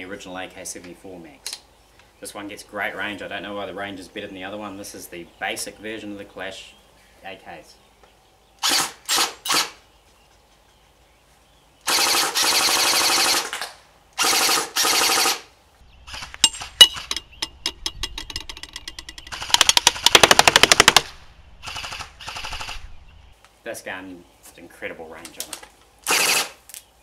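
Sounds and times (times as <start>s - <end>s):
airsoft gun firing bursts: 11.9s - 13.5s, 14.2s - 15.4s, 19.3s - 22.8s, 26.1s - 26.6s.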